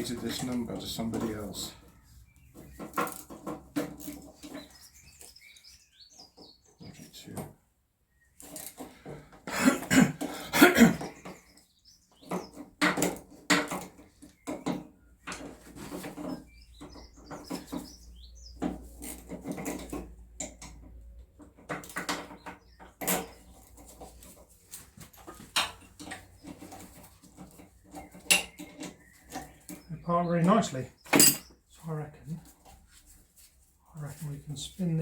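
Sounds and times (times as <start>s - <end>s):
spanners and metal parts clinking: 0.0s - 5.7s, 8.4s - 9.6s, 10.2s - 31.6s.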